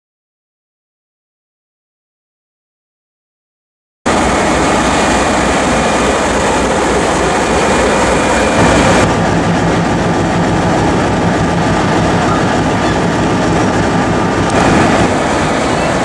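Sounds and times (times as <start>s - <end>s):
diesel locomotive rumble: 4.1s - 16.0s
rail noise: 4.1s - 16.0s.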